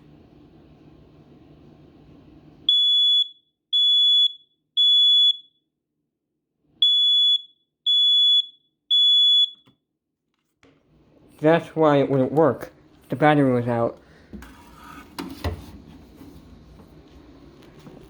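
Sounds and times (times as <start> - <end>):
smoke detector high beeps: 2.7 - 5.6, 6.8 - 9.7.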